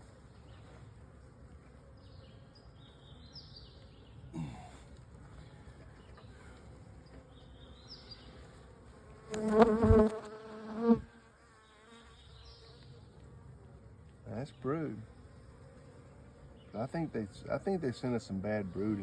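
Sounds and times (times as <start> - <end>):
honeybees buzzing: 0.0 - 19.0
bee flying past microphone: 7.4 - 12.8.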